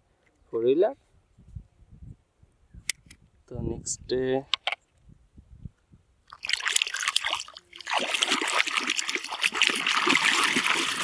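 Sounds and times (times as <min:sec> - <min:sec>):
water splashing and trickling: 0:06.3 - 0:11.0.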